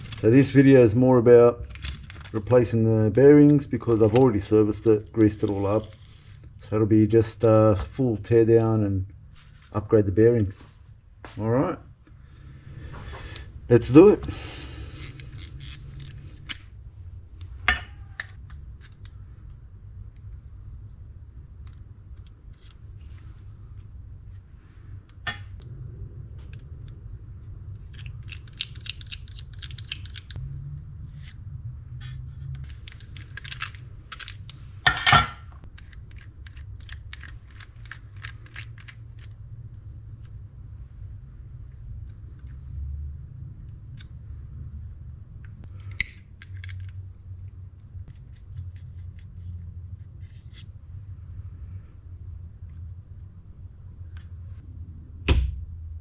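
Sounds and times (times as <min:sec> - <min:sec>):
low steady hum: 0:00.0 - 0:56.0
metal reel parts clicking: 0:14.0 - 0:16.7.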